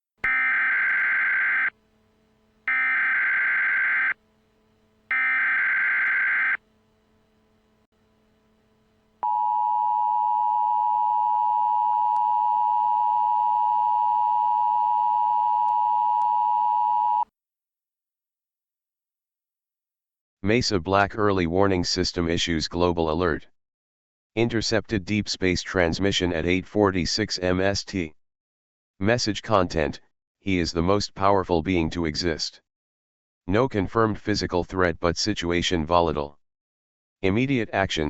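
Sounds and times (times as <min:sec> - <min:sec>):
steady attention tone: 0:00.2 - 0:15.2
warbling data header bursts: 0:00.3 - 0:01.8, 0:02.7 - 0:04.2, 0:05.1 - 0:06.6.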